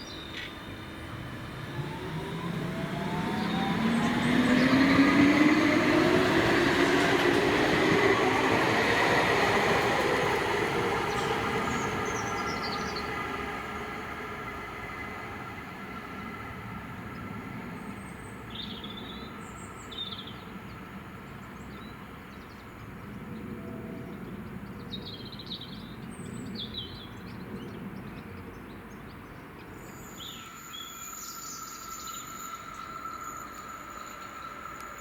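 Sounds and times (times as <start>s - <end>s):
birds chirping: 0.0s - 15.2s
faint steady tones: 29.9s - 35.0s.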